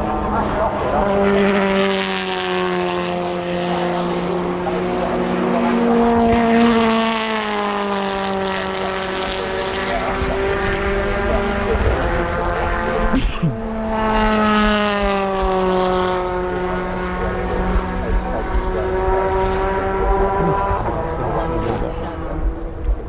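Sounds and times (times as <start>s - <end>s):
racing car engines running hard: 0.0s - 23.0s.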